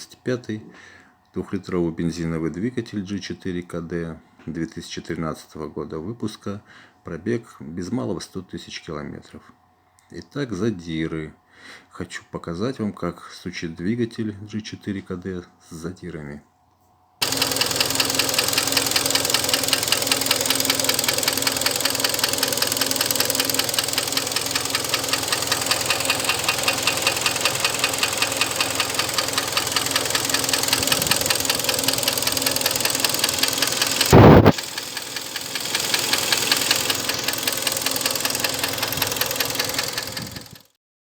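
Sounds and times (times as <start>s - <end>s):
engine knocking: 17.2s - 40.7s
loud thump: 34.1s - 34.6s.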